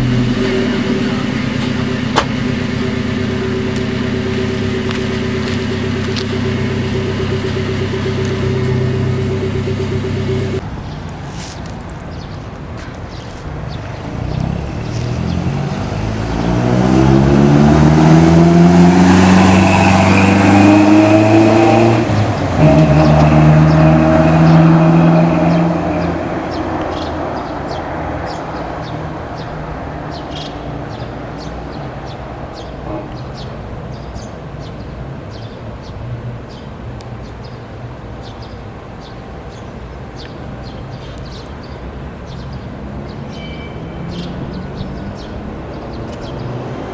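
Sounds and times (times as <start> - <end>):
car exhaust accelerating: 0.0 - 34.0.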